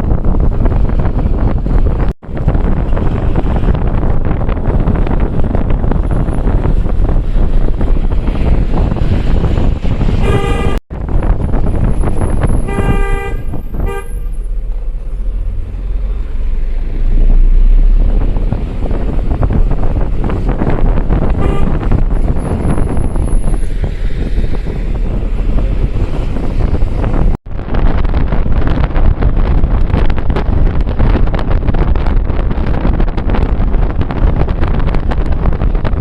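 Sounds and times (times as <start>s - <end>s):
wind and road noise: 0.0s - 36.0s
vehicle horn honking: 10.2s - 10.8s, 12.6s - 14.4s, 21.3s - 21.9s.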